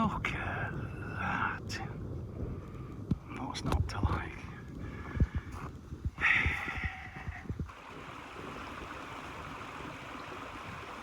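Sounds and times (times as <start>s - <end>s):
stream rushing: 7.7s - 11.0s.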